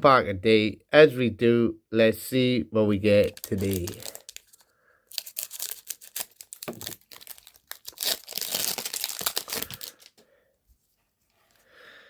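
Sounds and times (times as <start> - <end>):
foil wrapper crinkling: 3.2 - 10.2.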